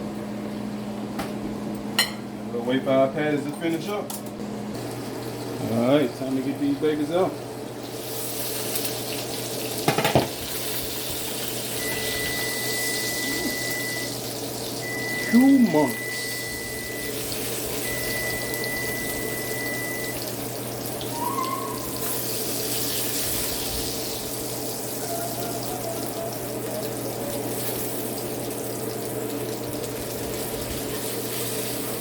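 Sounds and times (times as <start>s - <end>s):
burger patties sizzling: 4.8s - 32.0s.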